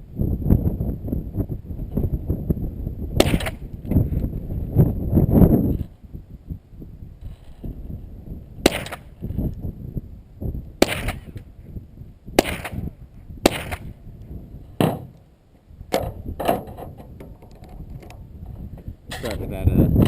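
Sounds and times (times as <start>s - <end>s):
rifle shots: 3.2s - 3.6s, 8.6s - 9.1s, 10.8s - 11.4s, 12.4s - 13.9s.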